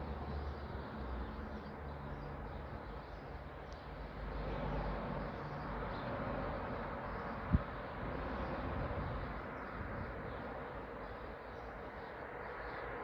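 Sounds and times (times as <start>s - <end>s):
outdoor background noise: 0.0s - 13.0s.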